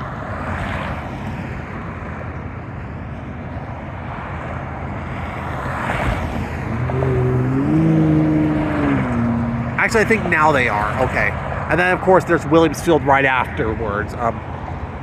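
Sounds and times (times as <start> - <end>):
road traffic: 0.0 - 15.0
vehicle engine humming: 4.5 - 15.0.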